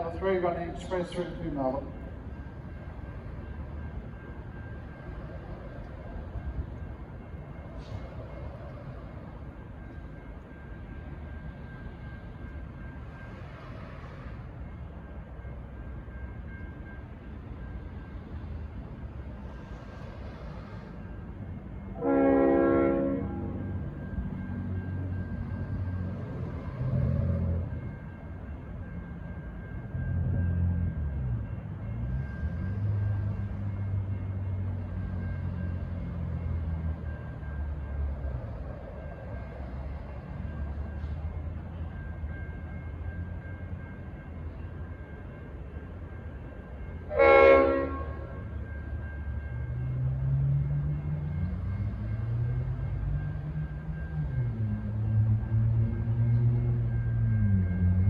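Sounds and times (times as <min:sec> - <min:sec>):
locomotive horn blast: 0:22.0 - 0:23.6, 0:47.1 - 0:48.4.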